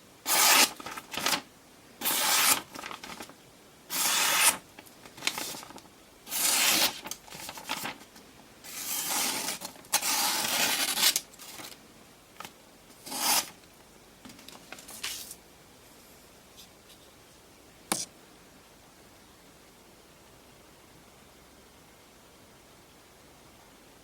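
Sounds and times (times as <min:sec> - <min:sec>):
knife scraping on sharpener: 0:00.3 - 0:00.7, 0:03.9 - 0:04.6, 0:13.0 - 0:13.5.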